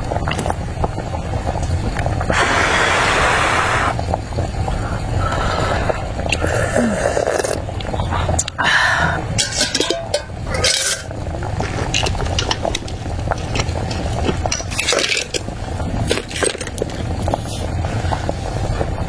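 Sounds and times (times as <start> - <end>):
steady low rumble: 4.0 - 19.0
dishes and utensils clinking: 9.3 - 17.4.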